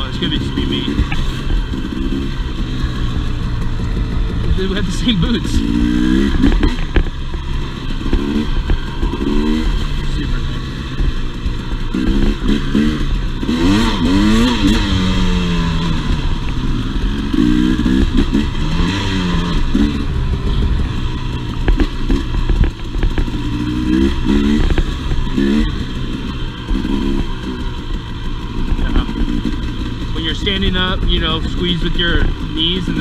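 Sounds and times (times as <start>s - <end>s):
two-stroke dirt bike engine revving: 0.0s - 33.0s
knocks and clatter: 3.2s - 9.8s, 17.3s - 31.6s.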